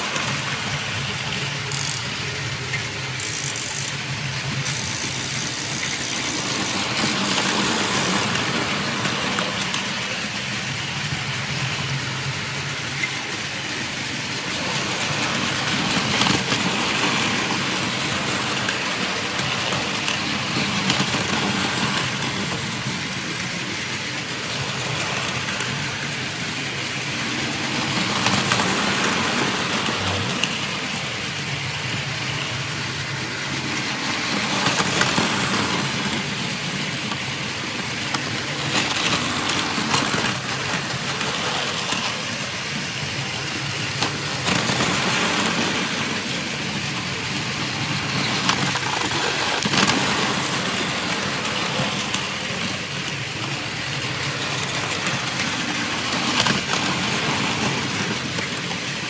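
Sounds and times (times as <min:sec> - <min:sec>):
toy train motors humming: 0:00.0 - 0:59.0
clicking over track joints: 0:00.1 - 0:10.7.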